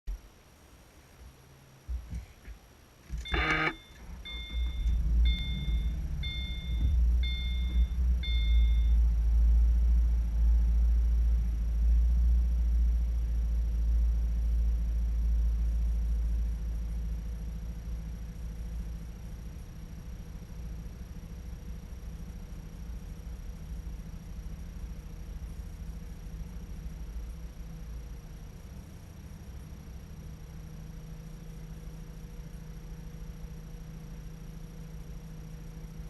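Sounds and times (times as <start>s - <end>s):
car engine starting and idling: 2.9s - 36.0s
dashboard warning chime beeps: 3.2s - 9.0s.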